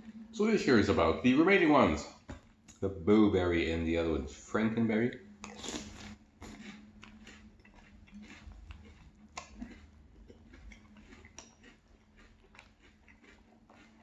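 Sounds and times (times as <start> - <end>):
crunchy cereal chewing: 5.4 - 14.0
wet mouth clicks: 5.4 - 14.0.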